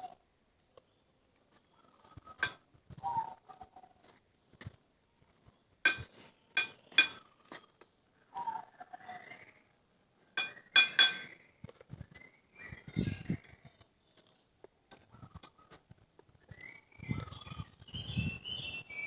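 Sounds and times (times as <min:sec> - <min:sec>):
spoon clinking on tableware: 0:05.9 - 0:07.2, 0:10.4 - 0:11.3.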